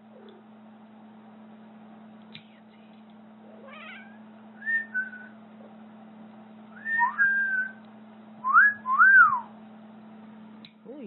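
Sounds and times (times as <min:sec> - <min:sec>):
faint steady hum: 0:00.0 - 0:11.0
kitten meowing: 0:03.6 - 0:04.2.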